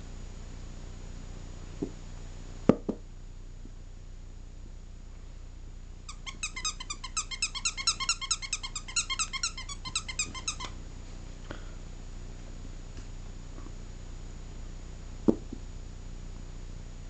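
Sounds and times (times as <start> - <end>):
puppy yipping: 6.1 - 10.8.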